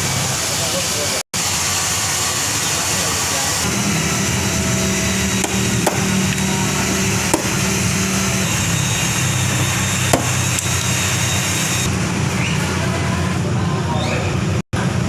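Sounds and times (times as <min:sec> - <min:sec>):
motor humming: 0:01.4 - 0:13.4
sharp knocks: 0:05.4 - 0:06.2, 0:07.3 - 0:07.6, 0:10.1 - 0:10.5.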